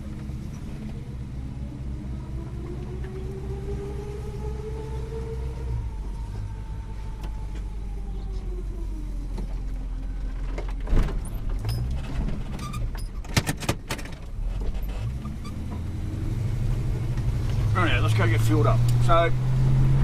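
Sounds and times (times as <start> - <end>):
vehicle engine running: 0.0 - 13.1, 14.2 - 20.0
sharp clicks and knocks: 10.4 - 15.8.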